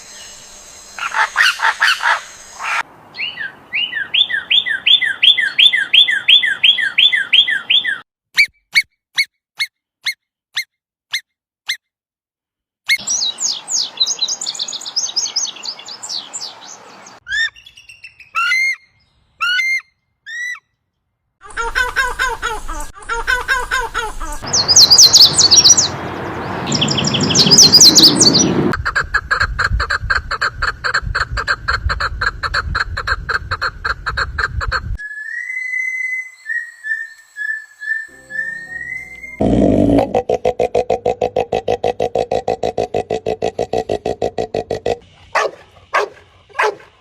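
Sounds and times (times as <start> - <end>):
bird calls: 1.0 - 11.8, 23.4 - 29.0, 33.0 - 47.0
rapid high bird chirping: 24.4 - 28.8
harsh bird notes: 37.8 - 41.8.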